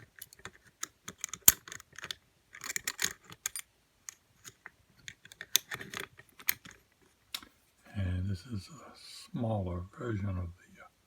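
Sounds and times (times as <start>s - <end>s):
lock picks clicking: 0.0s - 6.8s.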